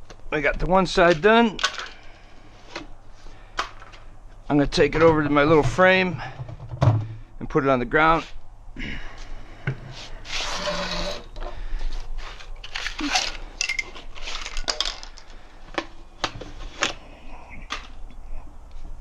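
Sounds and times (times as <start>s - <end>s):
wheel scraping and rustling: 9.6s - 15.5s.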